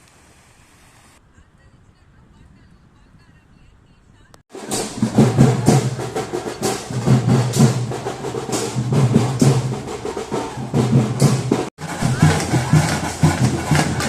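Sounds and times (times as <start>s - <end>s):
drums playing percussion music: 4.5s - 14.0s.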